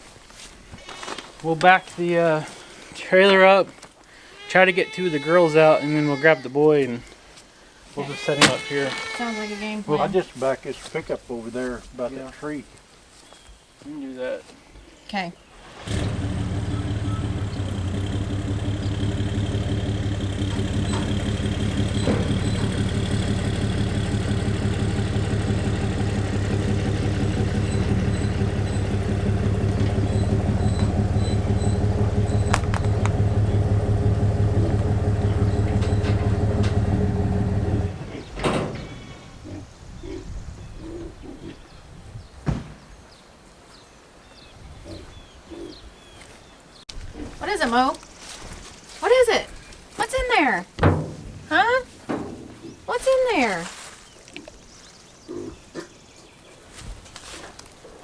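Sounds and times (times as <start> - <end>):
pickup truck engine running: 15.6 - 39.5.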